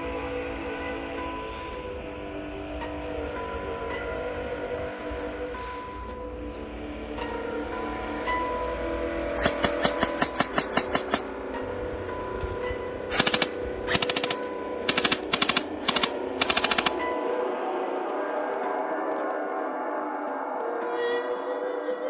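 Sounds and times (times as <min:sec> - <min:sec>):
background music: 0:00.0 - 0:22.0
airsoft gun firing bursts: 0:13.1 - 0:17.0.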